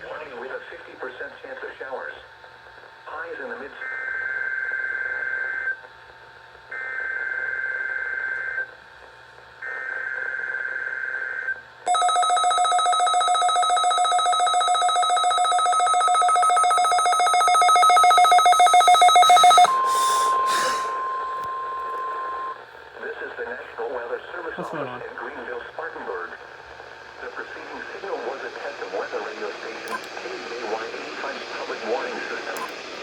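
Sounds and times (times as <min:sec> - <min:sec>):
shrill pulsing electronic alarm: 0:11.9 - 0:22.6
steady warning tone: 0:11.9 - 0:22.6
digital data bursts: 0:13.6 - 0:21.3.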